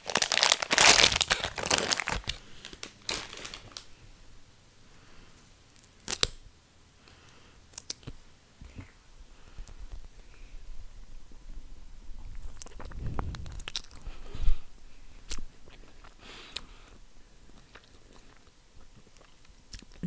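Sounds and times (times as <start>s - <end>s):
wrapper crinkling and tearing: 0.0s - 3.9s.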